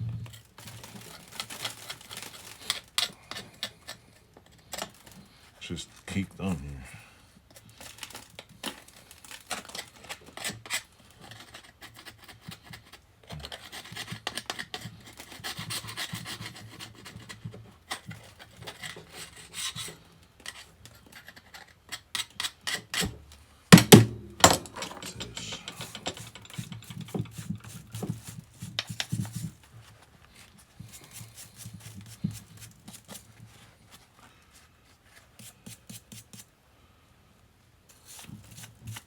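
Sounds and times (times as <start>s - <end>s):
tool scraping metal: 22.2s - 28.2s
loud knocks: 23.8s - 24.8s.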